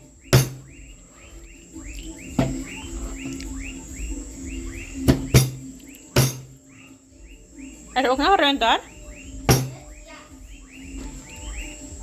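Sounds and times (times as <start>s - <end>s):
bird chirping: 0.0s - 12.0s
sharp knocks: 0.3s - 0.7s, 5.1s - 6.6s, 9.5s - 9.9s.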